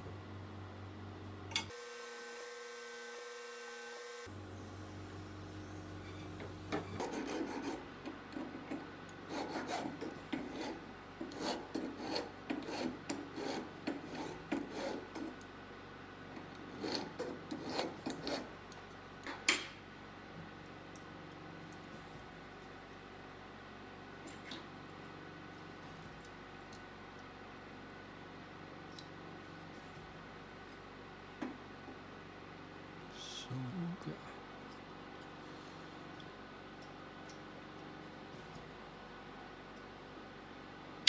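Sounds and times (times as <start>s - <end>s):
metal file rasping on metal: 6.9s - 15.4s, 16.6s - 18.6s.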